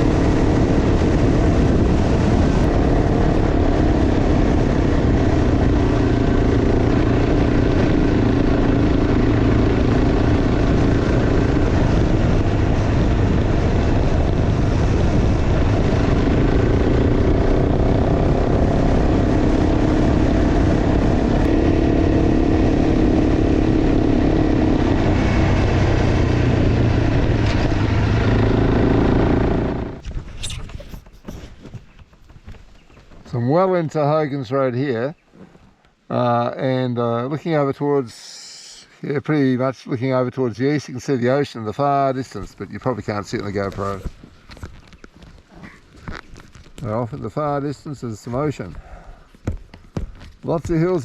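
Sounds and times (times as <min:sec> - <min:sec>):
motorcycle engine running: 0:00.0 - 0:30.0, 0:49.5 - 0:51.0
wind noise: 0:00.0 - 0:33.6, 0:42.0 - 0:51.0
tyre noise: 0:30.0 - 0:33.6, 0:43.1 - 0:51.0.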